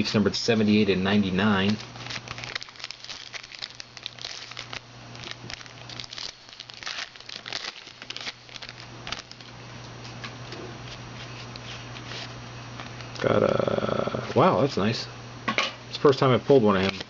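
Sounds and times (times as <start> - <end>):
wrappers and cards crinkling: 1.4 - 9.6, 16.7 - 17.0.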